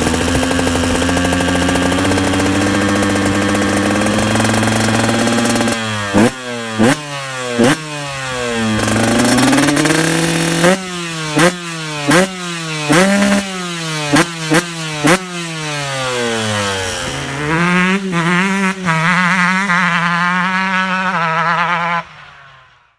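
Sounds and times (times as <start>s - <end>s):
engine idling unevenly: 0.0s - 7.5s
motorcycle engine revving: 0.0s - 22.9s.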